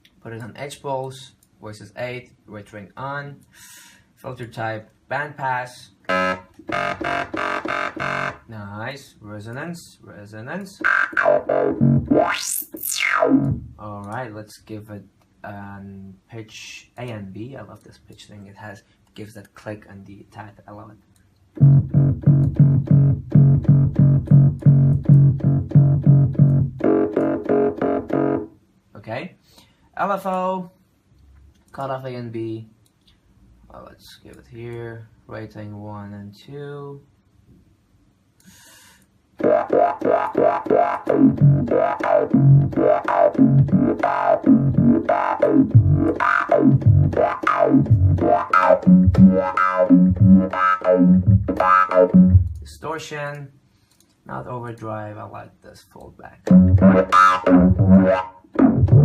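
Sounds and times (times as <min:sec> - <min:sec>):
synthesizer lead repeating notes: 0:06.1 - 0:08.4, 0:10.8 - 0:13.8, 0:21.6 - 0:28.5, 0:39.4 - 0:52.6, 0:56.5 - 0:59.0.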